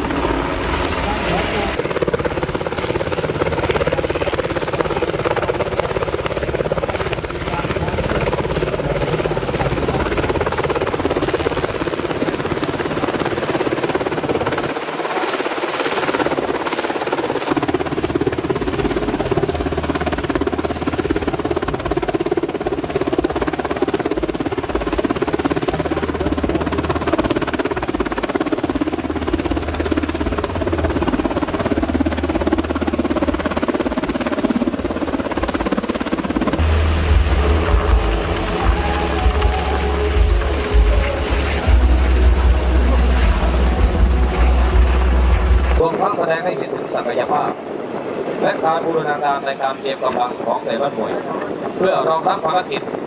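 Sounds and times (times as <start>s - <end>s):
hiss: 10.9s - 16.2s
engine rumble: 36.6s - 45.8s.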